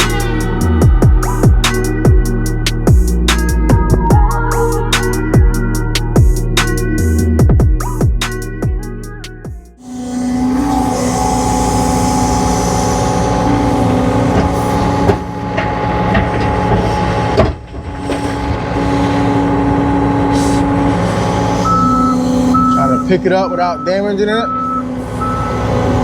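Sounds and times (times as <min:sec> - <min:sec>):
diesel engine whining: 0:00.0 - 0:26.0
backup alarm beeping: 0:21.6 - 0:25.6.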